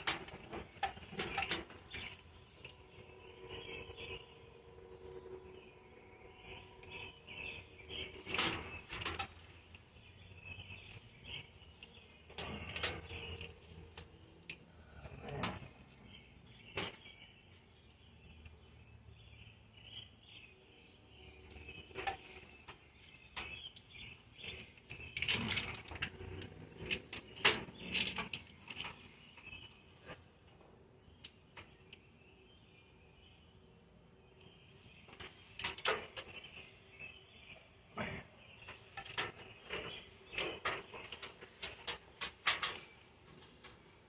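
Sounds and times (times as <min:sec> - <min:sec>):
wiring harness rustling and clicking: 0:00.0 - 0:02.9, 0:07.4 - 0:17.2, 0:21.5 - 0:32.0, 0:38.6 - 0:44.0.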